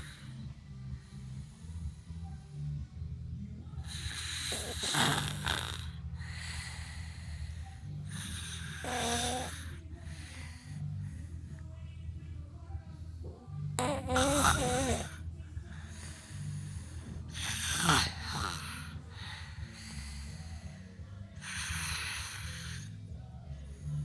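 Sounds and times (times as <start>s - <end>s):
person snoring: 3.8s - 11.2s, 13.8s - 15.2s, 15.8s - 23.0s.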